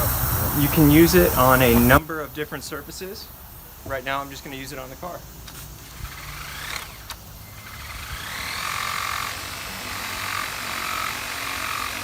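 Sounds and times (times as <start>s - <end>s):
water spray hissing: 0.0s - 2.0s.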